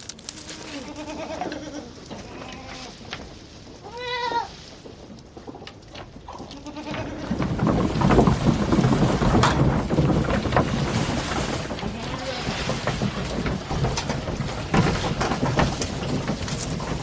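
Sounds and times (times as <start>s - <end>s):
goats bleating: 0.4s - 3.0s, 3.8s - 4.6s, 6.5s - 7.4s.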